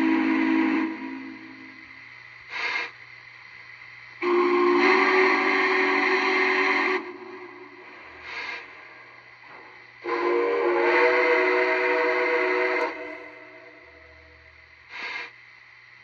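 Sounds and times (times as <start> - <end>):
steam whistle blasts: 0.0 - 1.8, 4.2 - 8.6, 10.0 - 15.3
steady low hum: 0.0 - 16.0.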